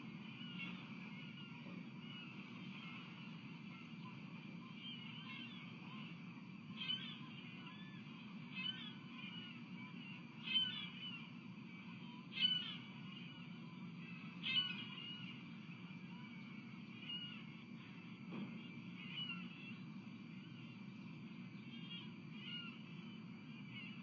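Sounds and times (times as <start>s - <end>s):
osprey calling: 0.0s - 24.0s
bird chirps: 0.2s - 11.3s, 11.9s - 19.8s.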